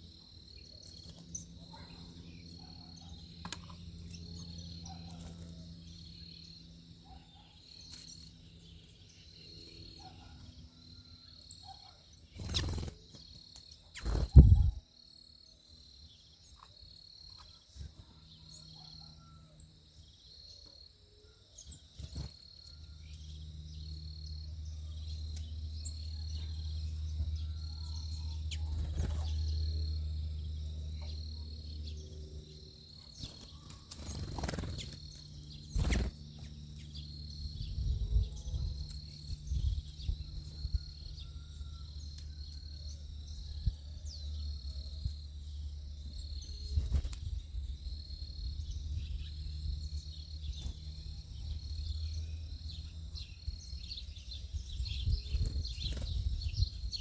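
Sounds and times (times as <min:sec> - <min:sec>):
insects trilling: 0:00.0 - 0:57.0.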